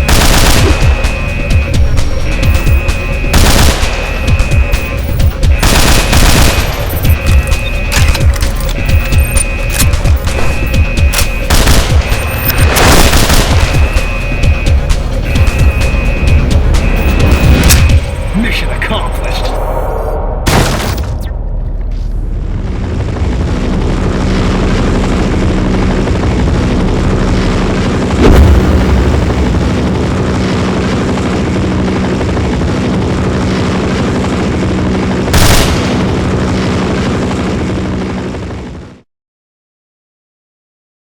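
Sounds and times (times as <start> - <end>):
dense rumble: 0.0 - 38.8
low hum: 0.0 - 39.0
sharp blast: 28.2 - 30.5
heavy boom: 28.2 - 30.6.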